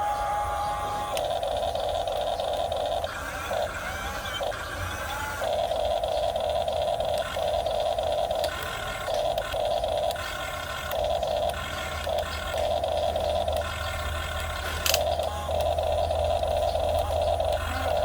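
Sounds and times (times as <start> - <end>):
small electric motors whining: 0.0 - 18.0.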